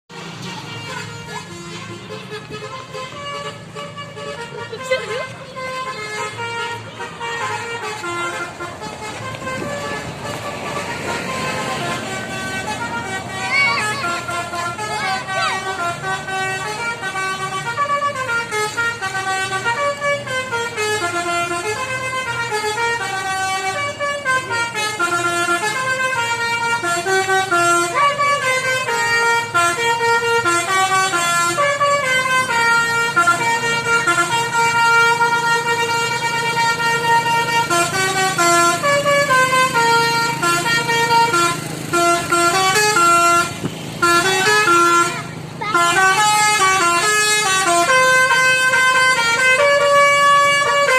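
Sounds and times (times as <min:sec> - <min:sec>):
low engine hum: 0:00.1 - 0:24.2
multi-tone air horn melody: 0:00.1 - 0:50.9.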